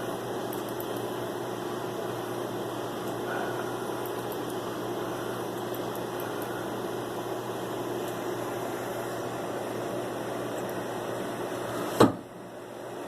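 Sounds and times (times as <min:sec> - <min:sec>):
computer cooling fan whirring: 0:00.0 - 0:13.0
constant low hum: 0:00.0 - 0:13.0.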